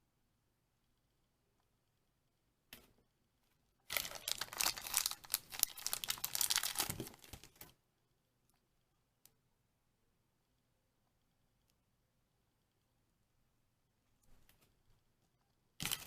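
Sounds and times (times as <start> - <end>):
plastic packaging crinkling and tearing: 3.9 - 7.7, 15.8 - 16.0.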